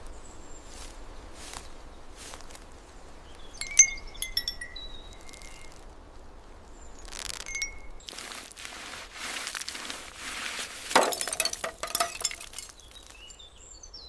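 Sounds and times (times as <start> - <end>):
light metallic clinks: 3.6 - 5.8, 7.4 - 8.0
faint rustling: 5.1 - 13.3.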